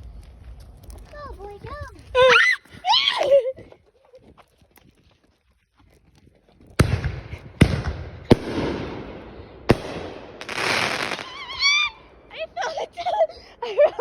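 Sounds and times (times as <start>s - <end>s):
fireworks bangs: 6.8s - 12.3s
fireworks crackling and hissing: 6.8s - 14.0s.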